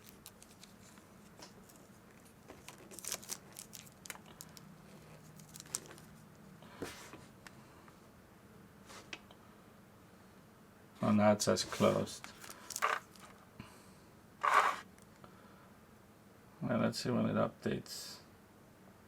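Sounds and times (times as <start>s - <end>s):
light plastic clicks and rustles: 0.0s - 6.2s.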